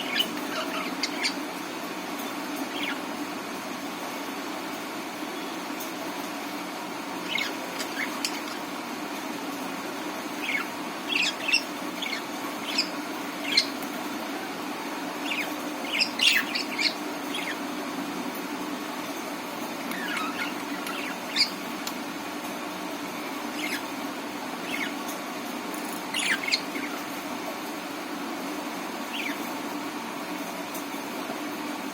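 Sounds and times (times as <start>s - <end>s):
budgerigars chirping: 0.0s - 1.5s, 2.7s - 3.1s, 7.2s - 8.8s, 10.3s - 13.8s, 15.2s - 17.7s, 19.9s - 21.6s, 23.4s - 24.0s, 24.6s - 25.0s, 25.8s - 27.1s, 29.1s - 29.6s
low background hum: 0.0s - 31.9s.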